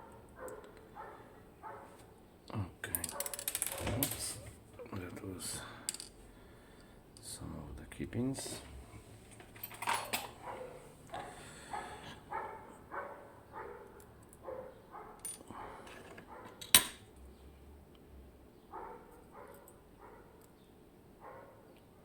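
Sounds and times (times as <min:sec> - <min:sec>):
dog barking: 0:00.0 - 0:02.0, 0:10.4 - 0:16.6, 0:18.7 - 0:20.4, 0:21.2 - 0:21.8.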